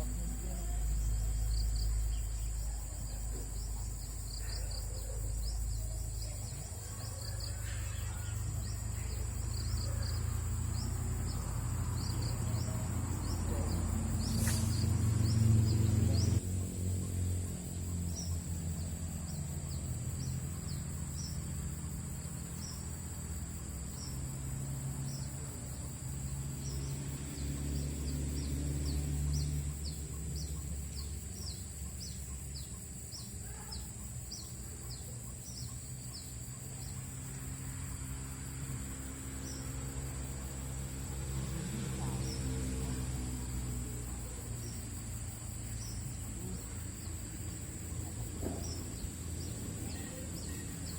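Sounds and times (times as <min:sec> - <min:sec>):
insect drone: 0:00.0 - 0:50.9.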